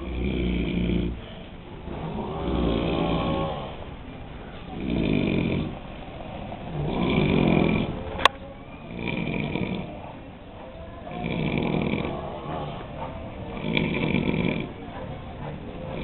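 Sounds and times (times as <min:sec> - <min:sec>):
men snoring: 0:00.0 - 0:04.0, 0:04.7 - 0:08.1, 0:08.8 - 0:10.1, 0:11.1 - 0:15.0.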